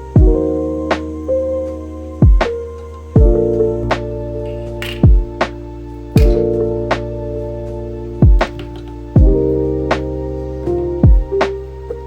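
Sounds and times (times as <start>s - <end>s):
deep kick drum beat: 0.2s - 0.4s, 2.2s - 2.5s, 3.2s - 3.4s, 5.0s - 5.4s, 6.2s - 6.6s, 8.2s - 8.6s, 9.2s - 9.5s, 11.0s - 11.4s.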